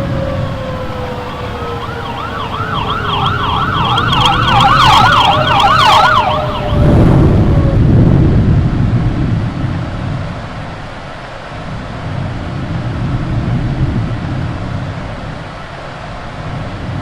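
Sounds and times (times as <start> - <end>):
ambulance siren yelp: 0.0 - 7.9
low wavering tornado siren: 0.0 - 10.6
heavy rain rushing: 0.0 - 16.6.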